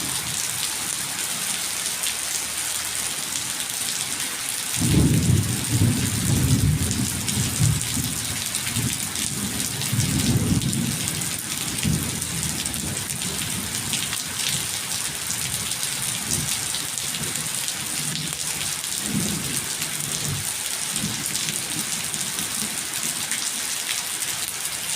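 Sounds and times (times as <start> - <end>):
heavy rain hissing: 0.0 - 22.7
thunder rumbling: 4.8 - 13.4.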